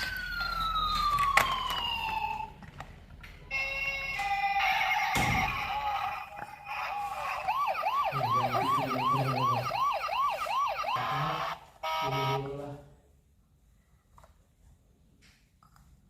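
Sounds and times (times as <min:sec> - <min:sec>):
toy siren yelp: 0:00.0 - 0:02.5, 0:03.5 - 0:12.5.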